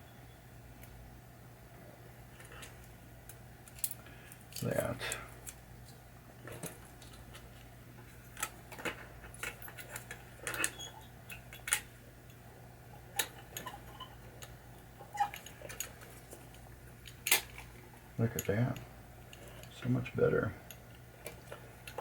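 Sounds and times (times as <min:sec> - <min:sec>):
steady low hum: 0:00.0 - 0:22.0
small parts clicking: 0:02.4 - 0:05.6, 0:13.0 - 0:18.6.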